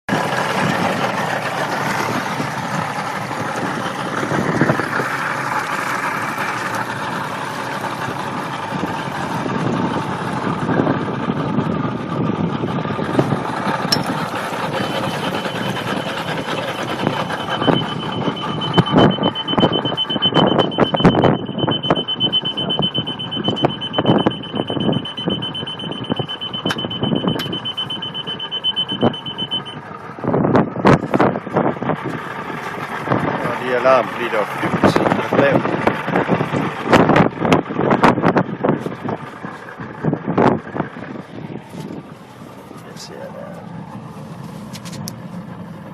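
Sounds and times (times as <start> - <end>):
outboard motor running: 0.1 - 45.9
wind and water noise: 0.1 - 45.9
high rapid beeping alarm: 14.6 - 29.8
person speaking: 42.8 - 43.7.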